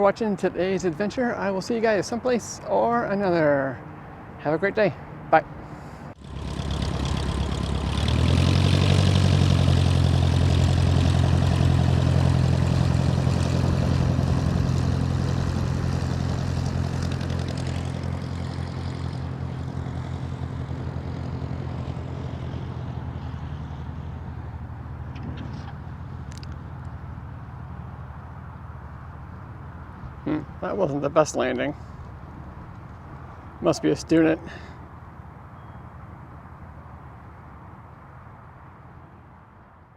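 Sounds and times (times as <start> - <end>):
propeller plane engine droning: 0.0 - 39.9.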